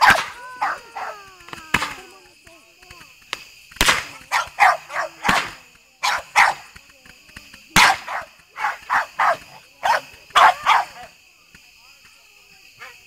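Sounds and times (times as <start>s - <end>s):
dog barking: 4.3s - 5.4s, 6.0s - 6.6s, 7.8s - 11.1s.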